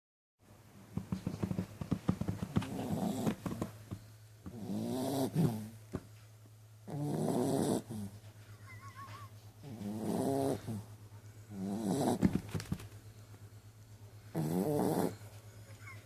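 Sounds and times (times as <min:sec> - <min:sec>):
dog snoring: 0:01.3 - 0:03.8, 0:04.5 - 0:05.8, 0:06.8 - 0:08.2, 0:09.6 - 0:10.9, 0:11.5 - 0:12.5, 0:14.3 - 0:15.3.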